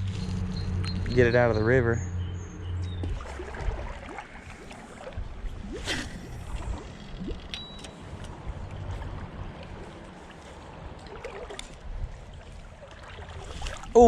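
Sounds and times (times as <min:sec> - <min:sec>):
water splashing and gurgling: 0:02.9 - 0:14.0.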